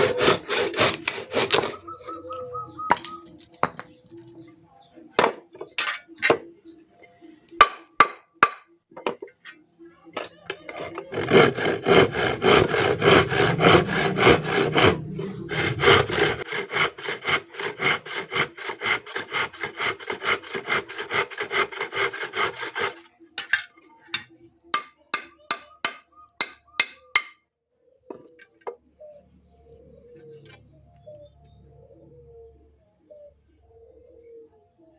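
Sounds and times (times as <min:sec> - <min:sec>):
hand saw cutting wood: 0:00.0 - 0:01.8, 0:10.7 - 0:23.1.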